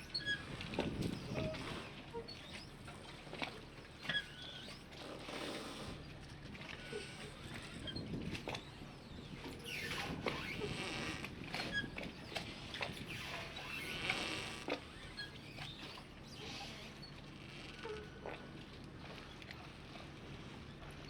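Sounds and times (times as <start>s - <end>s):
squeaks and creaks: 9.6s - 12.4s, 13.0s - 18.4s.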